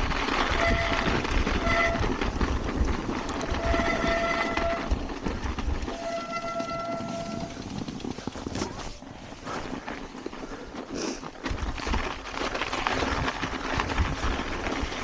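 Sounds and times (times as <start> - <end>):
bike brakes squealing: 3.6 - 5.0, 5.9 - 7.6.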